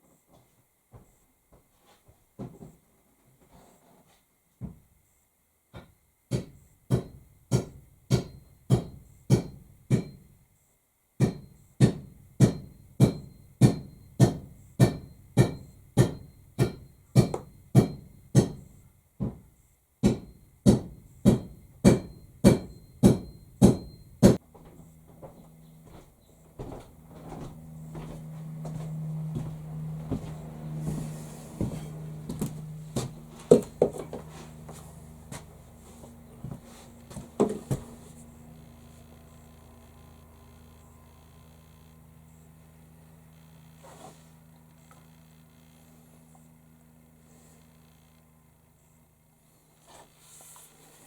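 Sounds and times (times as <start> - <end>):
low steady hum: 4.4 - 51.0
hammer striking metal wedge: 6.3 - 10.3, 11.2 - 18.7, 20.0 - 24.4.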